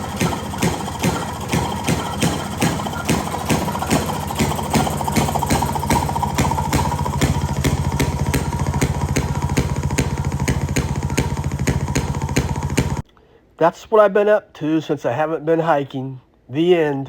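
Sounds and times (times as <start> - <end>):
small engine popping: 0.0 - 13.1.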